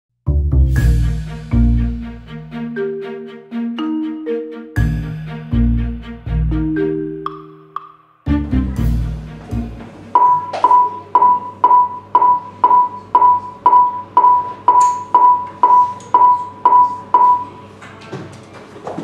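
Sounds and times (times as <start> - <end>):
short electronic beeps: 10.2 - 17.6.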